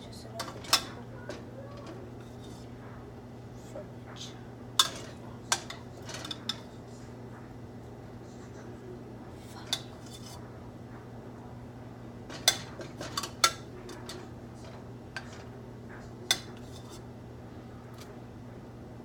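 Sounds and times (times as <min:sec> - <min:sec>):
steady low hum: 0:00.0 - 0:19.0
utensils and dishes clinking: 0:00.4 - 0:02.7, 0:04.8 - 0:06.9, 0:09.4 - 0:10.4, 0:12.3 - 0:17.1.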